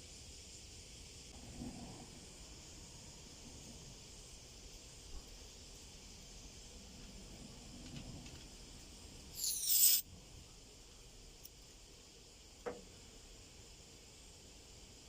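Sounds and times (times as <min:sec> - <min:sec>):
refrigerant gas hissing: 0:02.0 - 0:10.0.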